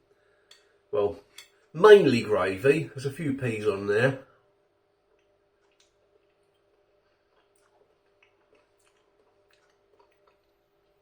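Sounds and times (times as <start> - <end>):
faint steady hum: 0.0 - 11.0
soft chewing clicks: 5.0 - 11.0.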